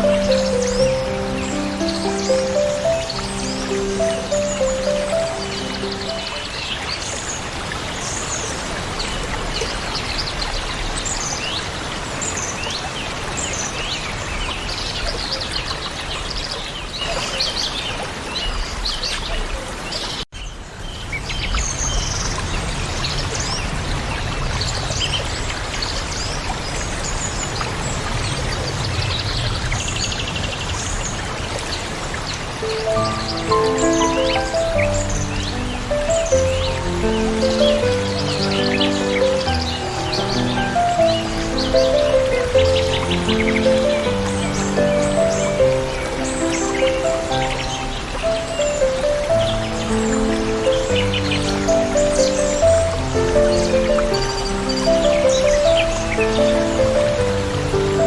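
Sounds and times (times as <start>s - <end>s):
waterfall rushing: 0.0s - 14.5s, 31.3s - 58.0s
songbirds chirping: 0.0s - 24.0s, 24.6s - 58.0s.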